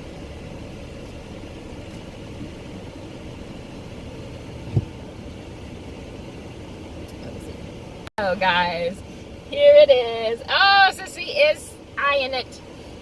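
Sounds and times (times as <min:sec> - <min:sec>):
car engine idling: 0:00.0 - 0:13.0
low thump: 0:04.7 - 0:05.0.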